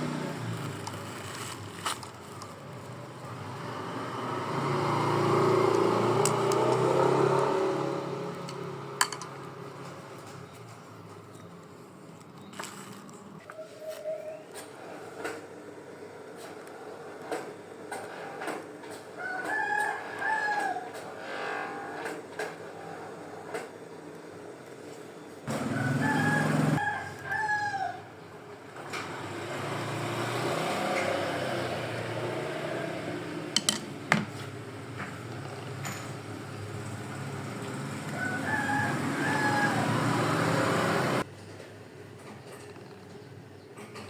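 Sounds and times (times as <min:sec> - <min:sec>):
rooster crowing: 0:19.2 - 0:22.0, 0:25.5 - 0:28.2, 0:37.8 - 0:41.2.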